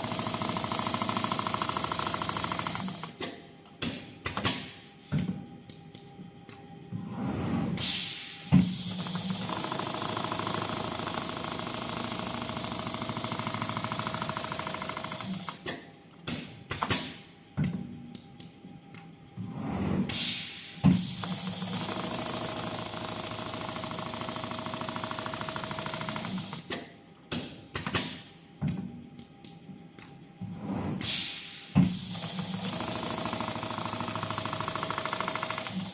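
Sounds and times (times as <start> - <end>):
sewing machine stitching: 0.0 - 3.1, 9.1 - 15.6, 21.6 - 26.7, 32.4 - 35.9.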